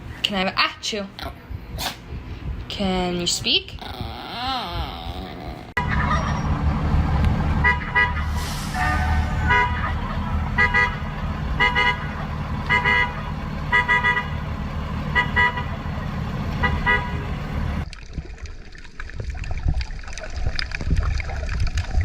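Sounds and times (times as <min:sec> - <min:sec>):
short honks: 0:07.6 - 0:14.4, 0:15.1 - 0:15.8, 0:16.6 - 0:17.4.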